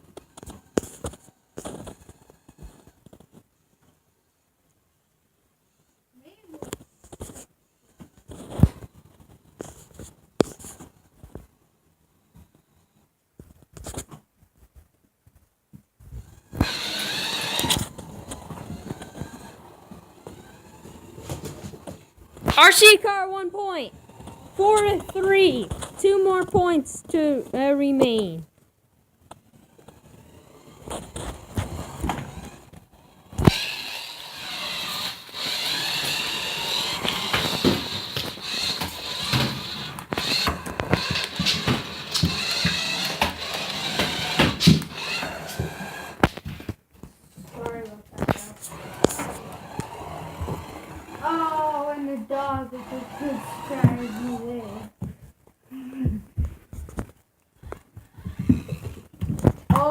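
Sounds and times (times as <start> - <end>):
toy car electric motor whine: 0.2 - 3.0, 16.2 - 22.8, 23.9 - 26.4, 29.3 - 46.7, 47.6 - 55.0, 58.2 - 59.0.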